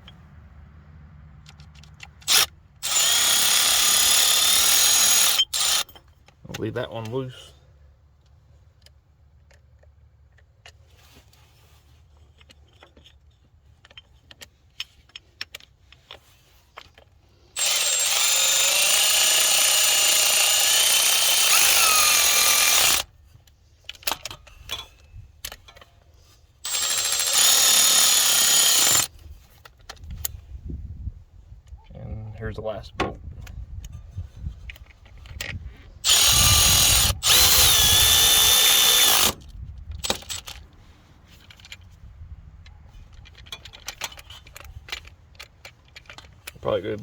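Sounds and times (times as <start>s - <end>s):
electric ratchet whirring: 2.2s - 6.0s, 17.5s - 23.1s, 26.6s - 29.1s, 36.0s - 40.6s
sockets and bolts clicking: 34.6s - 42.0s, 42.6s - 46.6s.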